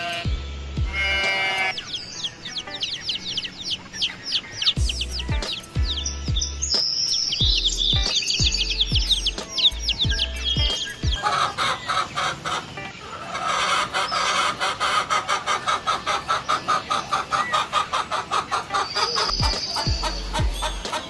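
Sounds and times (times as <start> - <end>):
music with low thumping beat: 0.0 - 1.7, 4.7 - 11.2, 19.3 - 21.0
small birds chirping: 0.0 - 21.0
chickens clucking: 0.9 - 6.0, 9.0 - 21.0.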